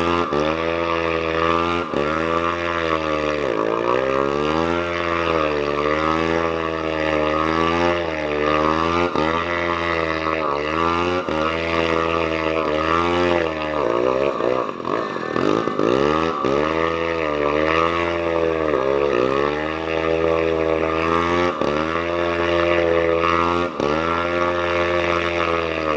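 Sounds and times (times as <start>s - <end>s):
engine running unevenly: 0.0s - 25.9s.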